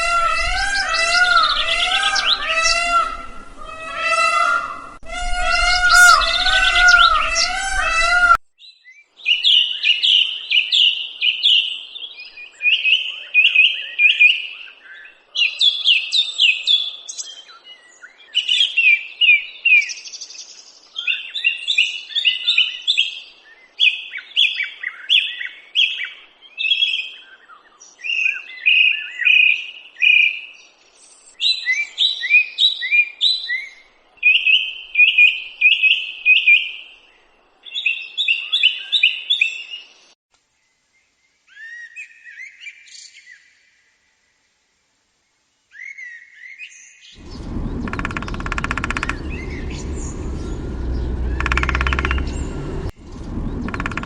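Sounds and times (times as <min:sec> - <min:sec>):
songbird chirping: 0:00.0 - 0:18.8, 0:45.7 - 0:54.0.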